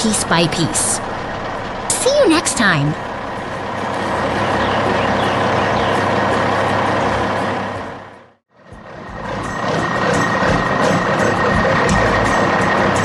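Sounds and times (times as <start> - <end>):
steady high tone: 0.0 - 8.0
heavy truck engine running: 0.0 - 13.0.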